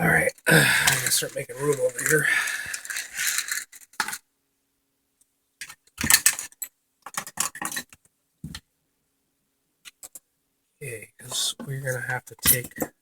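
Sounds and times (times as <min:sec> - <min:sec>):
small hard parts clinking: 0:00.4 - 0:04.2.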